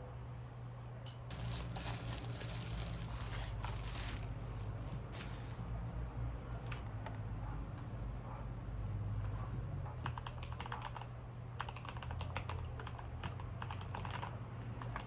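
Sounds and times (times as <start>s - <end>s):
material rustling and crinkling: 1.3s - 5.5s.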